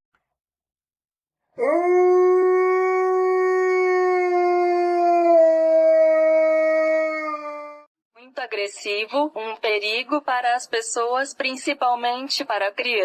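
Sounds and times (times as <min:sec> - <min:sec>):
dog howling: 0:01.6 - 0:07.9.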